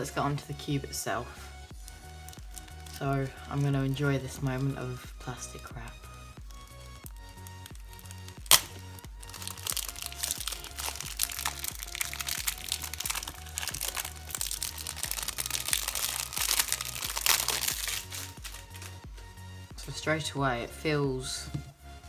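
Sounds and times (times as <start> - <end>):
background music: 0.0 - 22.0
plastic wrap cracking: 1.7 - 19.3
plastic wrap crinkling: 1.7 - 19.3.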